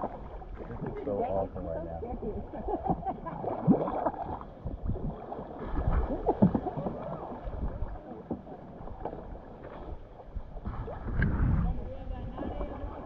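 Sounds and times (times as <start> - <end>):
paddle strokes: 0.0 - 13.0
water splashing around boat: 0.0 - 13.0
low rumble: 10.3 - 13.0.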